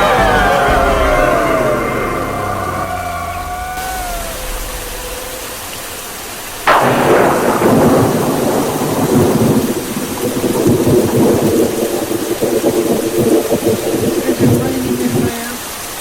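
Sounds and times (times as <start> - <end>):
held music note: 0.0 - 7.0
thunderclap rumbling: 0.0 - 15.8
heavy rain: 0.0 - 16.0.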